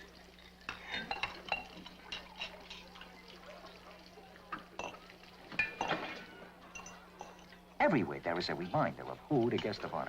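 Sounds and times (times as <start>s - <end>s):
dishes and cutlery clinking: 0.4s - 3.3s, 4.5s - 7.7s, 8.5s - 10.0s.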